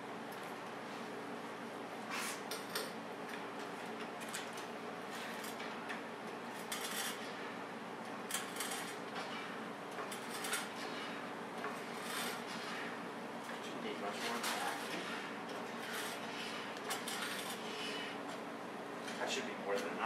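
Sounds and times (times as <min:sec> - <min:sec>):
metallic clinks and scrapes: 0:15.8 - 0:18.0.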